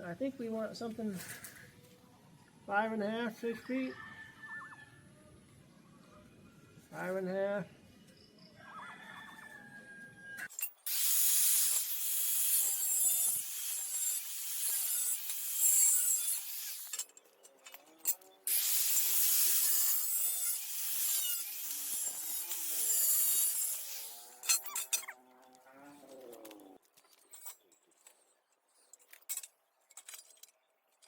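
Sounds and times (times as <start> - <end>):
metal tube cutting noise: 10.5 - 26.8.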